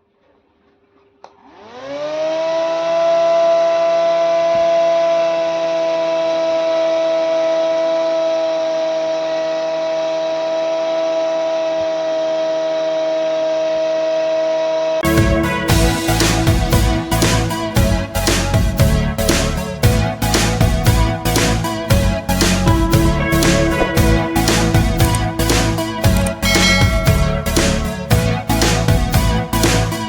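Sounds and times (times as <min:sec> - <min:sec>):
small motor whining: 0:01.3 - 0:03.4
music: 0:15.0 - 0:30.0.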